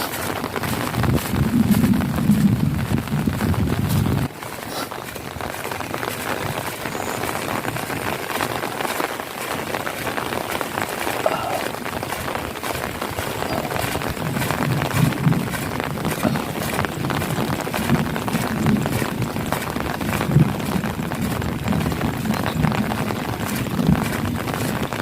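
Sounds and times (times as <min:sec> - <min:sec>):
heavy rain splashing: 0:00.0 - 0:25.0
low rumble: 0:00.6 - 0:04.3.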